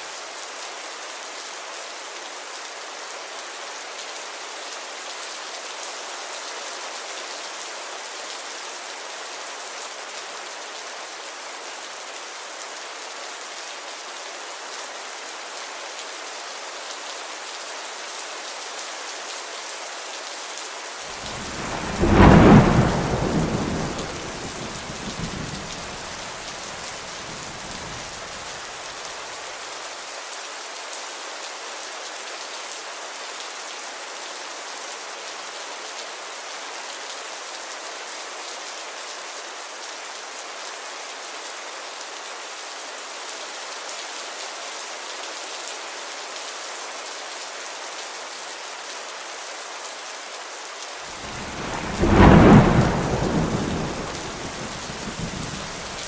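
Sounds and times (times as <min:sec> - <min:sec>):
steady rain falling: 0:00.0 - 0:56.0
thunderclap cracking and rumbling: 0:21.1 - 0:28.5, 0:51.2 - 0:56.0.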